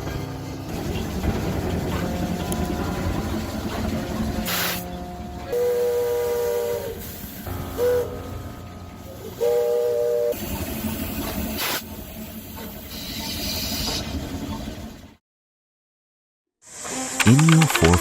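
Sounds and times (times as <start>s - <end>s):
steam hissing: 4.4s - 4.9s, 9.2s - 14.1s
steam locomotive whistle blasts: 5.5s - 8.4s, 9.3s - 10.6s.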